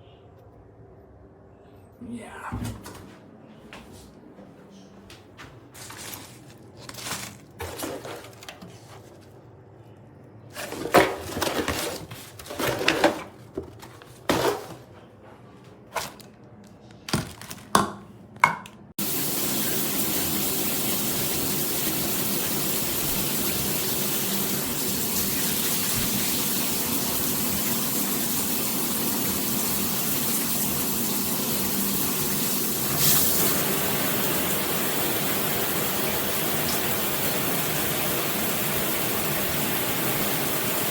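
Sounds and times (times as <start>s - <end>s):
parts being handled: 5.7s - 18.9s
shower head spraying water: 19.0s - 40.9s.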